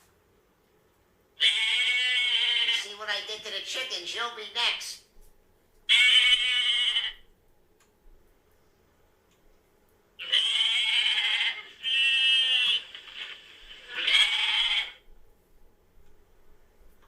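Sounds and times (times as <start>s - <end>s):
goat bleating: 1.4s - 2.9s, 5.9s - 7.2s, 10.2s - 12.9s, 13.8s - 15.0s.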